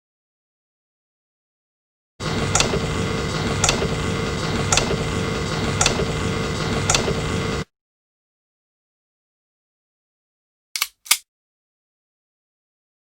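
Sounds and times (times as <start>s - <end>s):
steady mechanical hum: 2.2s - 7.7s
sharp clicks: 2.4s - 5.0s, 5.6s - 6.1s, 10.8s - 11.2s.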